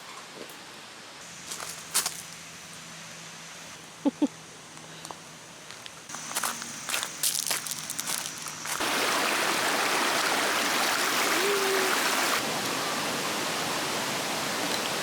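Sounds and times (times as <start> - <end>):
stream water rushing: 6.1 - 15.0.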